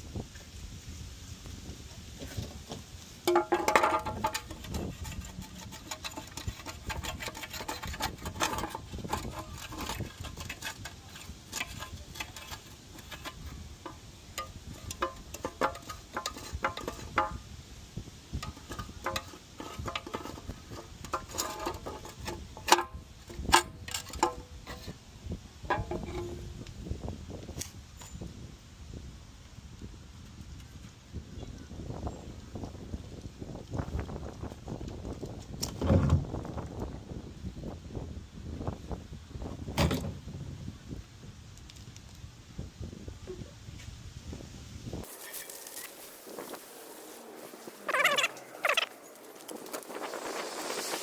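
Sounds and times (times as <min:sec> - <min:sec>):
low wind rumble on microphone: 0:00.0 - 0:45.1, 0:46.2 - 0:51.0
metal car parts clinking: 0:03.3 - 0:04.8.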